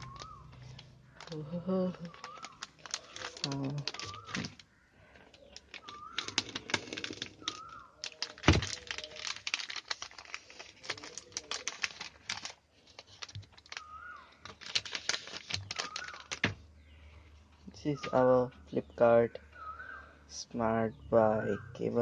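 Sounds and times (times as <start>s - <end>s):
plastic packaging clicks and rustles: 0.0s - 1.4s, 2.0s - 16.7s.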